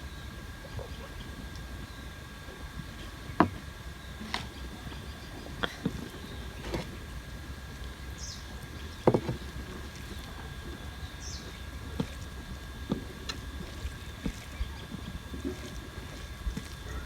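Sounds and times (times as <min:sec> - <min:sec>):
faint steady hum: 0:00.0 - 0:17.0
food and dishes clicking: 0:09.1 - 0:09.4.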